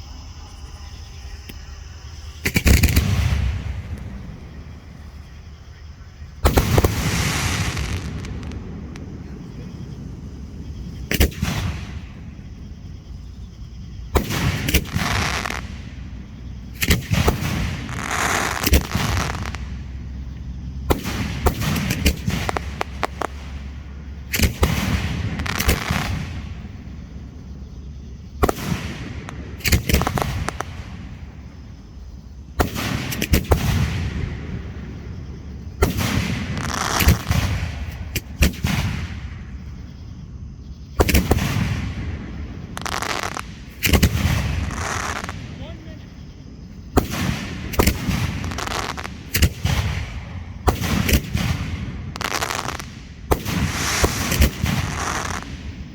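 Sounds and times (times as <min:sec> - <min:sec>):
fireworks bangs: 0:00.0 - 0:55.9
fireworks crackling: 0:01.4 - 0:40.0, 0:41.0 - 0:55.9.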